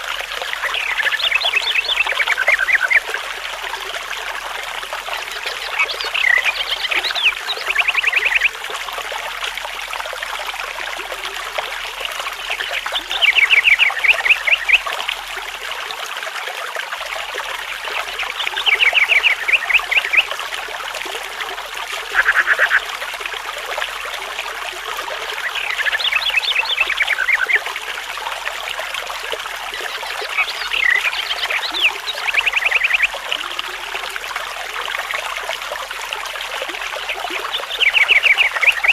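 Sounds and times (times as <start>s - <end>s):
trickling stream: 0.0s - 38.9s
bird singing: 0.6s - 3.0s, 18.1s - 20.3s, 25.4s - 27.7s, 29.8s - 33.2s.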